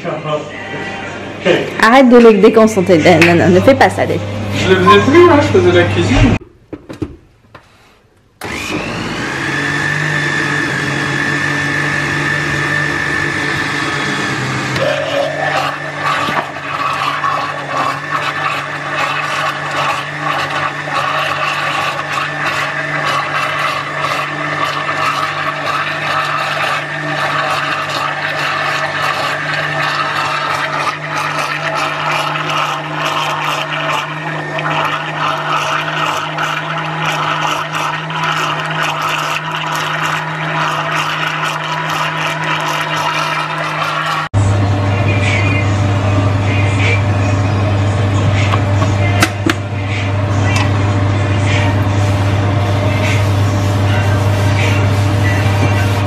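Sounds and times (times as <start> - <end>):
blender motor running: 3.2 - 6.4, 8.4 - 56.0
blender contents rattling: 14.7 - 44.3.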